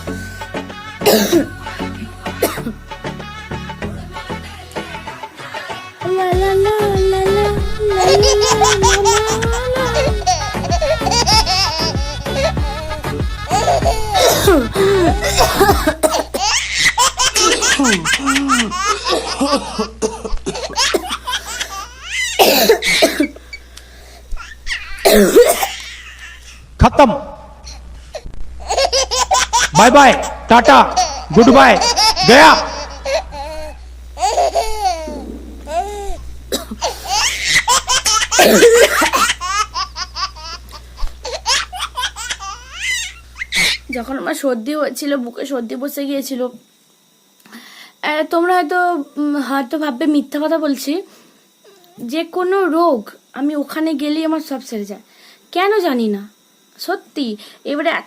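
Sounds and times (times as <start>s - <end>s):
sharp coughs: 1.0s - 1.5s, 2.4s - 2.8s, 14.2s - 14.7s, 22.4s - 23.4s, 25.0s - 25.7s, 36.5s - 36.9s, 38.4s - 39.2s
people laughing hard: 7.8s - 16.0s, 16.6s - 21.8s, 36.9s - 40.2s.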